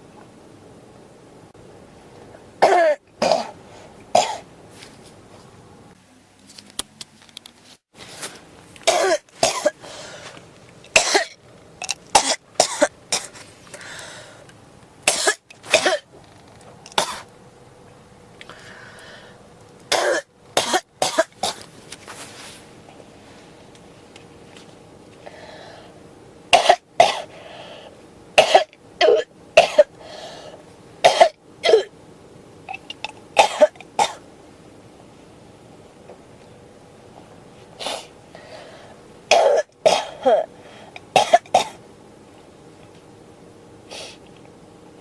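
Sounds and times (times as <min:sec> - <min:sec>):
person coughing: 0:02.6 - 0:03.6, 0:04.2 - 0:04.5, 0:08.8 - 0:09.8, 0:11.0 - 0:11.4, 0:12.2 - 0:13.4, 0:15.1 - 0:16.0, 0:19.9 - 0:21.6, 0:26.6 - 0:27.3, 0:28.4 - 0:29.9, 0:31.0 - 0:31.9, 0:33.0 - 0:34.2, 0:39.3 - 0:40.5, 0:41.2 - 0:41.8.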